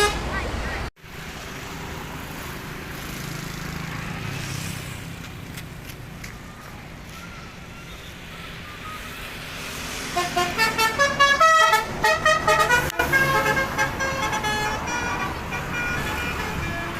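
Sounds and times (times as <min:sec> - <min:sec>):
bus horn playing tune: 0:00.0 - 0:00.4, 0:10.1 - 0:16.9.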